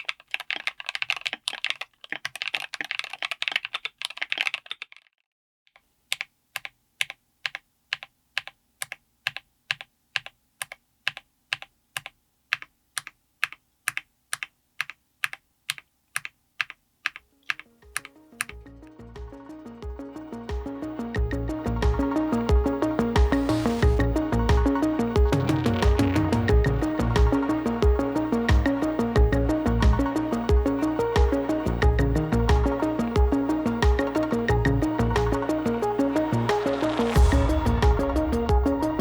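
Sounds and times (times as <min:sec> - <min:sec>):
mechanical keyboard typing: 0:00.0 - 0:05.1, 0:05.7 - 0:18.6
music: 0:17.8 - 0:39.0.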